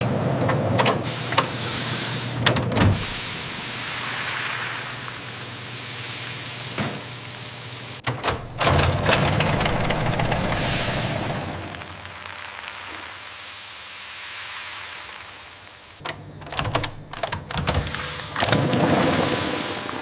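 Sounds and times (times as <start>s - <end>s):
steam hissing: 1.0s - 16.0s, 17.0s - 20.0s
clanks and knocks: 8.0s - 11.6s.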